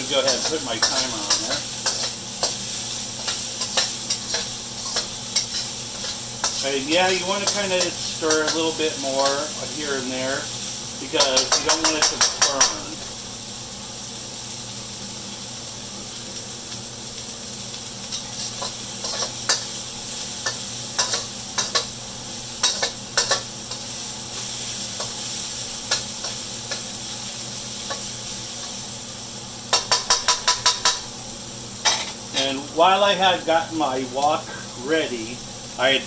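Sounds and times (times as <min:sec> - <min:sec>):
spatula scraping wok: 0:00.0 - 0:13.2, 0:18.0 - 0:28.9
vegetables sizzling in oil: 0:00.0 - 0:36.0.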